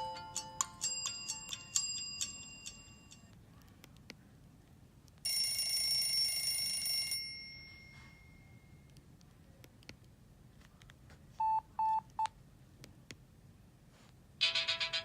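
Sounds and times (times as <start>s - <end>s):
melodic phone ringtone: 0.0s - 3.2s, 5.3s - 8.6s.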